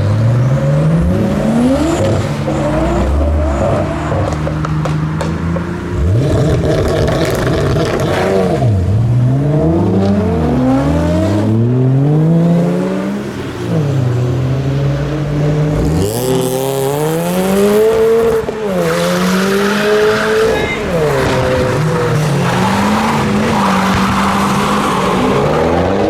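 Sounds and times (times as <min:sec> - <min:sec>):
car engines accelerating: 0:00.0 - 0:26.0.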